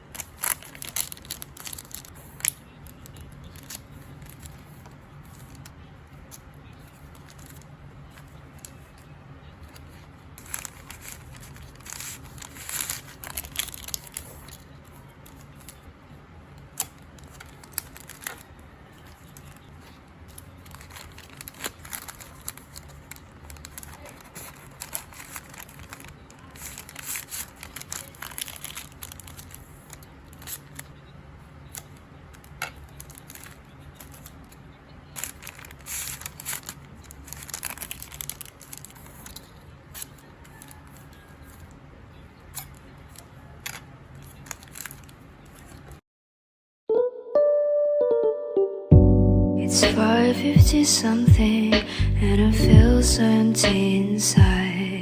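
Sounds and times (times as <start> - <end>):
plastic and paper crinkling: 0.0 - 31.0, 31.6 - 41.8, 42.4 - 46.0
low steady hum: 48.8 - 55.0.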